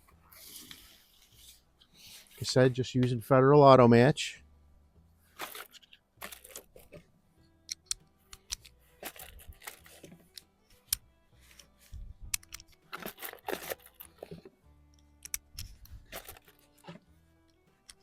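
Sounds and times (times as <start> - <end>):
quiet background music: 0.0 - 18.0
cartridges clicking into magazine: 7.6 - 8.8, 12.3 - 14.0, 14.9 - 16.5, 17.5 - 18.0.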